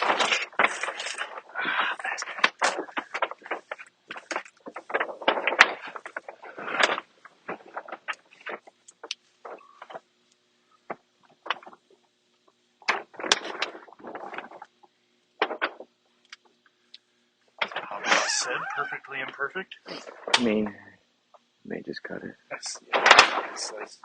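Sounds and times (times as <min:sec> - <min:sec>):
vinyl decal rustling: 0:00.0 - 0:16.5, 0:17.6 - 0:20.6, 0:22.6 - 0:24.0.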